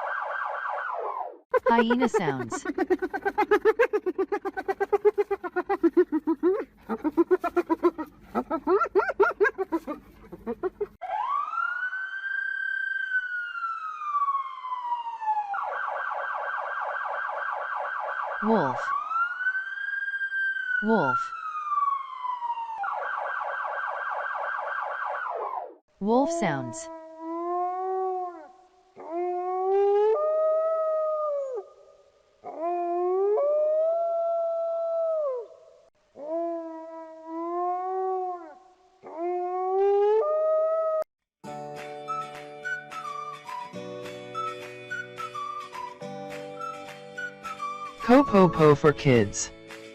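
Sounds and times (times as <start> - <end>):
siren wailing and yelping: 0.0 - 25.8
wolf howling: 2.6 - 10.8, 27.1 - 35.6.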